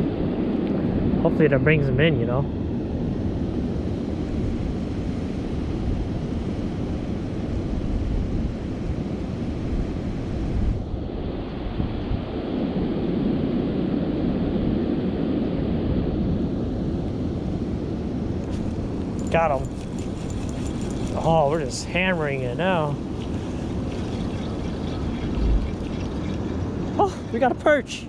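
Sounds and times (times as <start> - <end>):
wind buffeting microphone: 0.0 - 28.0
constant noisy hiss: 17.9 - 28.0.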